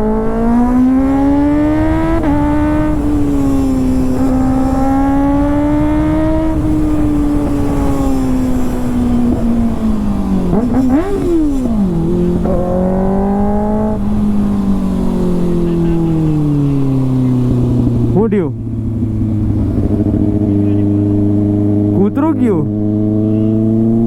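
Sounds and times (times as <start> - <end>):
constant low rumble: 0.0 - 22.7
motorcycle engine running: 0.0 - 24.0.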